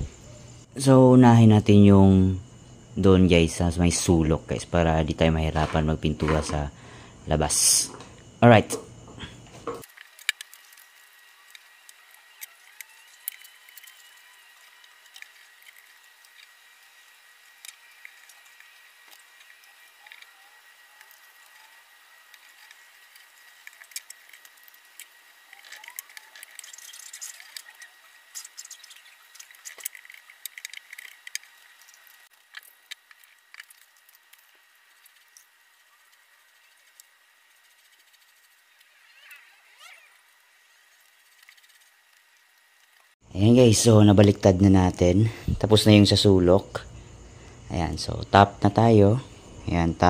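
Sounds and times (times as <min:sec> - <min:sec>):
thin steady high tone: 0:00.0 - 0:50.0
paintbrush wet squishing strokes: 0:33.1 - 0:39.4, 0:40.8 - 0:42.3.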